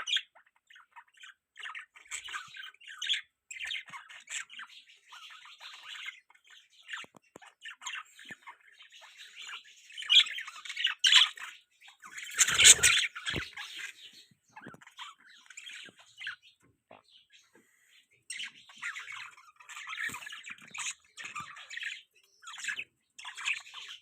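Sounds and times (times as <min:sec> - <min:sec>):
budgerigars chirping and squawking: 0:00.0 - 0:24.0.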